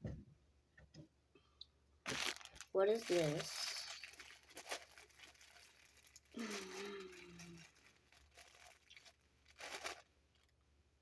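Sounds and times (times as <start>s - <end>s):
plastic package crinkling and tearing: 2.0s - 10.6s
person humming: 6.4s - 7.7s.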